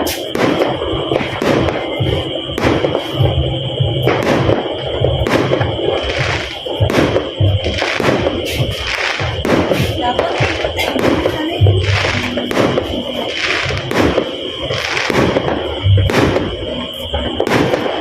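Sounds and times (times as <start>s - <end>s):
firecrackers crackling: 0.0s - 18.0s
firework bangs: 0.0s - 18.0s.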